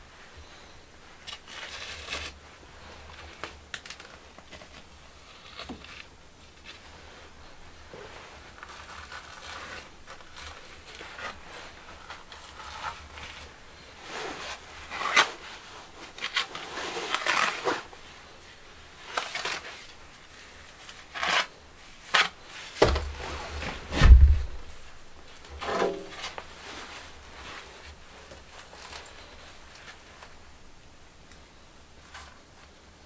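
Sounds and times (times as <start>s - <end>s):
scraping rustling and knocking: 22.8s - 24.9s, 25.5s - 30.3s
deep thud: 23.8s - 24.8s.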